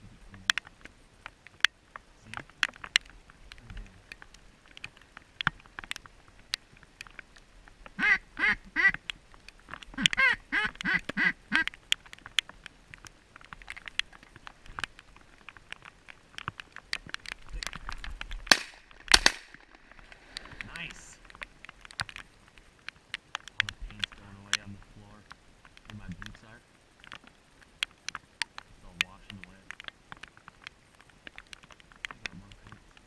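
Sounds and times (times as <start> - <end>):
small clicks and taps: 0.3 - 8.0, 8.8 - 33.0
duck quacking: 8.0 - 9.0, 10.0 - 11.7.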